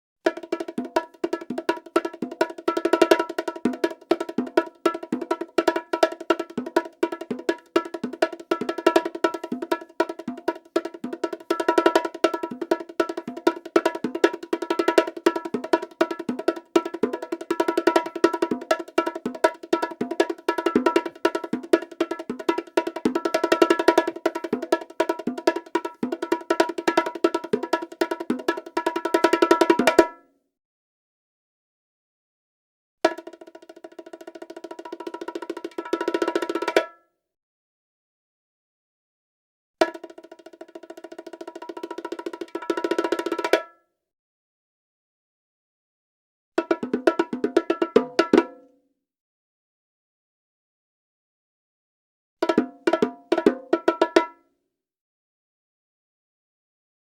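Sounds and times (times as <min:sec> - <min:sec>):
bongos played by hand: 0:00.2 - 0:30.2, 0:33.1 - 0:37.0, 0:39.8 - 0:43.7, 0:46.6 - 0:48.6, 0:52.4 - 0:54.4.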